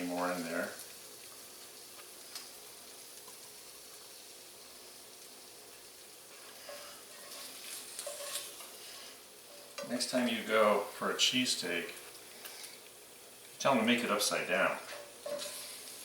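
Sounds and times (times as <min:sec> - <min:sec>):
meat sizzling in a pan: 0:00.0 - 0:16.0
small scrapes in pan: 0:06.3 - 0:09.8, 0:14.8 - 0:16.0.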